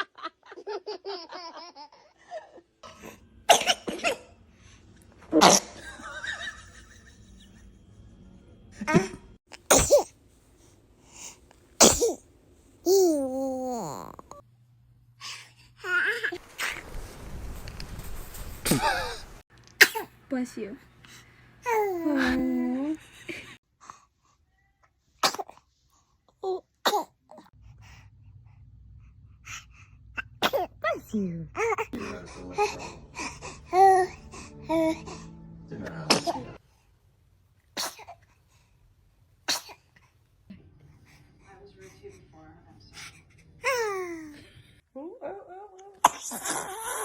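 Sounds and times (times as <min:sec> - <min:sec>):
baby sneezing: 0:03.5 - 0:04.2, 0:05.4 - 0:05.8, 0:09.7 - 0:10.1, 0:11.8 - 0:12.2, 0:19.8 - 0:20.1, 0:25.2 - 0:25.6, 0:26.8 - 0:27.1, 0:30.4 - 0:31.0, 0:36.1 - 0:36.4, 0:37.8 - 0:38.2, 0:39.5 - 0:39.8
baby vocal sound: 0:12.9 - 0:14.4.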